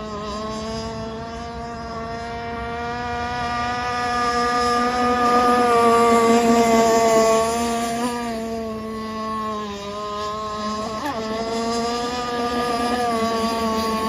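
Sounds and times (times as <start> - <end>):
model boat engine: 0.0 - 14.0.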